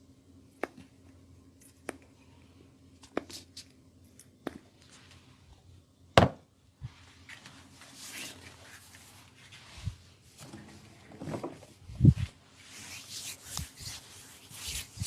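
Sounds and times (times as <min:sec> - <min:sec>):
soft rustle: 0:06.8 - 0:10.5, 0:11.8 - 0:15.0.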